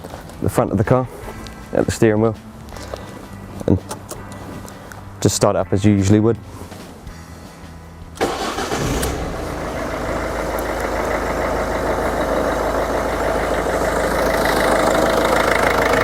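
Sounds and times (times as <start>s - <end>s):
car engine idling: 8.2s - 16.0s.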